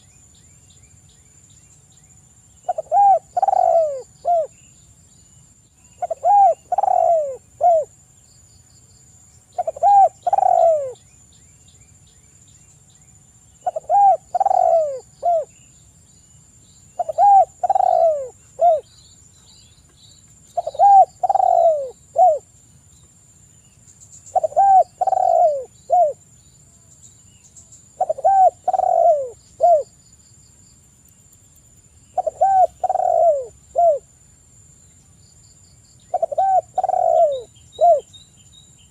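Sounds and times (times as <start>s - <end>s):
dove cooing: 2.6s - 4.6s, 6.0s - 7.9s, 9.6s - 11.0s, 13.6s - 15.5s, 17.0s - 18.9s, 20.6s - 22.5s, 24.3s - 26.2s, 28.0s - 29.9s, 32.2s - 34.1s, 36.1s - 38.1s.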